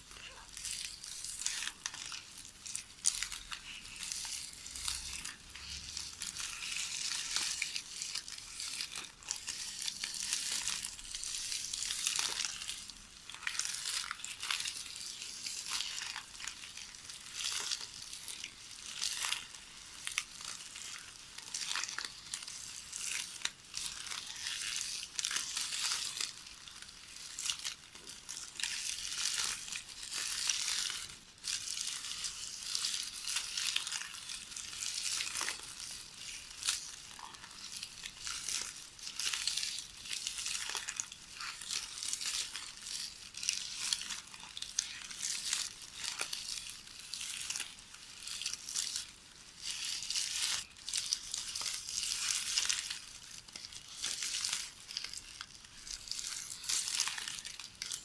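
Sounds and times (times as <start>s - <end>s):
videotape ribbon rustling and crackling: 0.0s - 58.0s.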